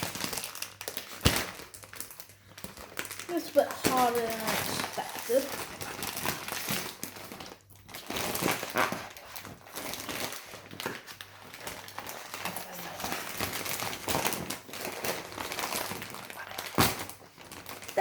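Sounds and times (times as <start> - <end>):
plastic packaging crinkling: 0.0 - 18.0.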